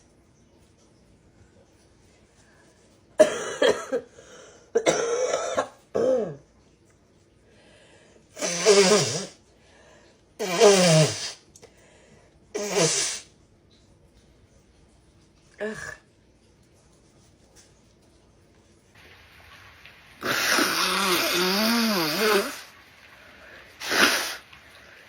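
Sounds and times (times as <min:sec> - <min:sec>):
person blowing nose: 0:08.4 - 0:09.4, 0:10.4 - 0:11.4, 0:12.6 - 0:13.3, 0:20.2 - 0:22.7, 0:23.8 - 0:24.5.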